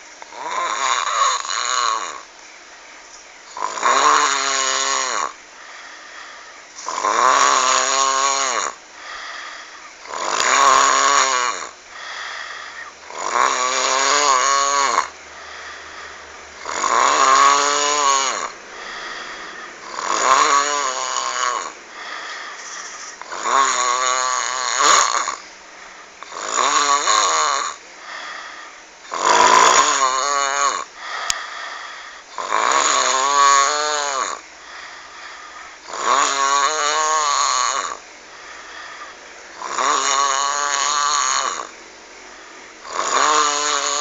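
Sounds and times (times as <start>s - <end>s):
heavy snoring: 0.2s - 2.3s, 3.5s - 44.0s
quiet breathing: 5.2s - 7.0s, 8.6s - 10.2s, 11.4s - 13.1s, 14.6s - 16.7s, 17.9s - 20.2s, 21.2s - 23.4s, 27.7s - 29.1s, 30.8s - 32.4s, 34.2s - 35.9s, 37.9s - 39.7s, 41.6s - 43.4s.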